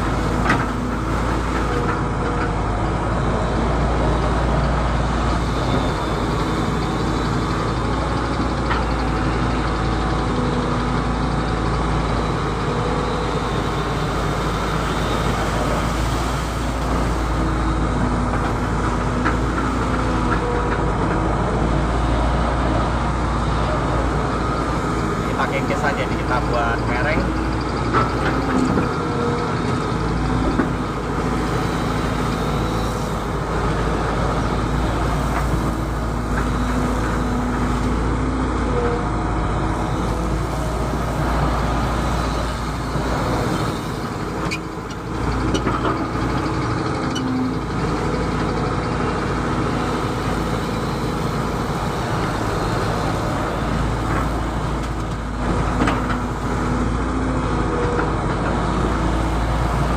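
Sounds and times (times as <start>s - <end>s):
excavator diesel engine running: 0.0s - 59.9s.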